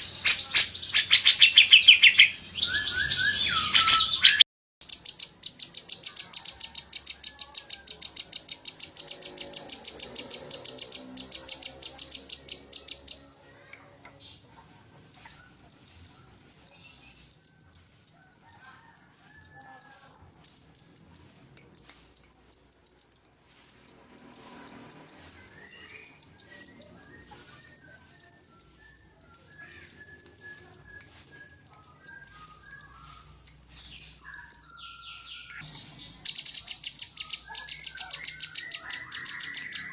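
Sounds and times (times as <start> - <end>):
bird high chipping notes: 0.0 - 13.3, 14.2 - 39.9
bird lower warbling phrases: 23.6 - 39.9.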